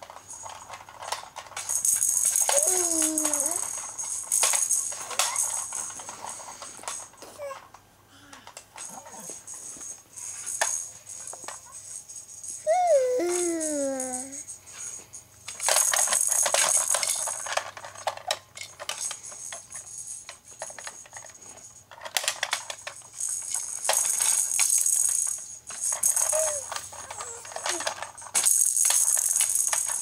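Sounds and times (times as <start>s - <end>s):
baby rattle jingling: 0.1s - 7.6s, 8.8s - 30.0s
baby vocalizing: 12.7s - 14.4s.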